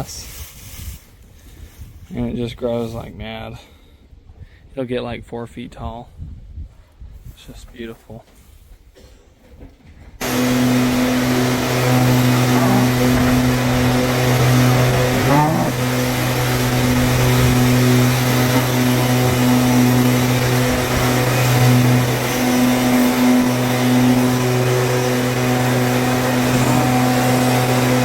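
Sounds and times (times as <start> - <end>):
engine drone: 10.2 - 28.0.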